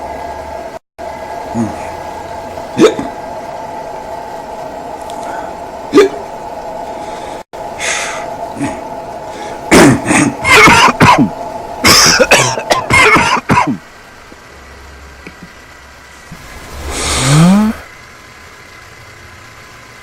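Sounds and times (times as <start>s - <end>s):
steady hum: 0.0s - 20.0s
person coughing: 2.8s - 3.2s, 5.9s - 6.2s, 9.7s - 13.8s.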